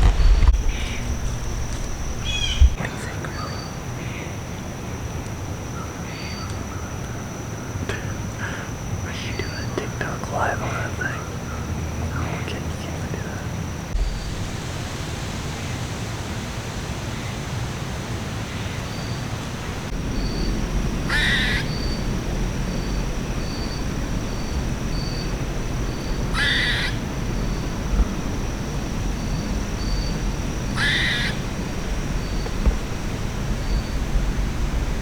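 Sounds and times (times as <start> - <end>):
crow cawing: 2.2 - 2.7, 20.4 - 22.1, 25.9 - 27.6, 30.6 - 31.6.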